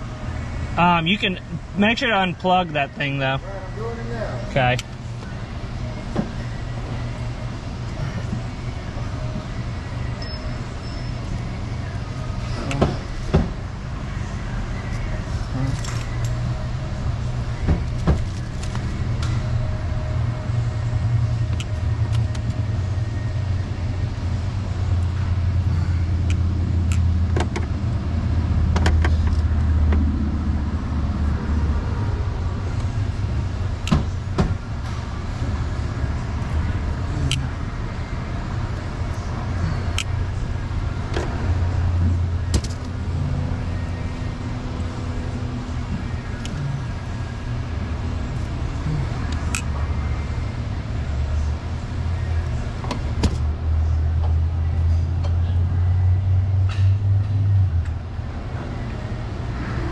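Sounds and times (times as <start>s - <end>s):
vehicle engine idling: 0.0s - 59.6s.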